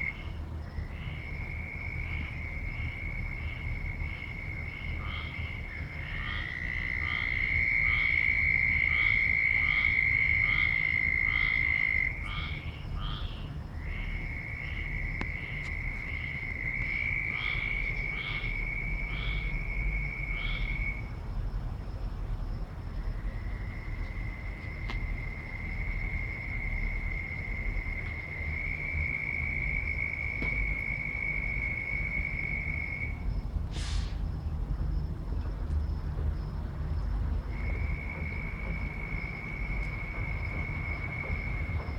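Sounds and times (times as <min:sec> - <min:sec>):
pulsed frog call: 0:00.0 - 0:21.0.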